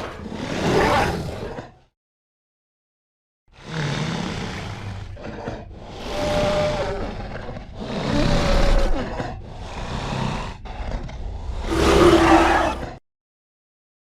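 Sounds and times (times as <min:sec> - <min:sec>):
deep dinosaur calls: 0:03.6 - 0:13.0.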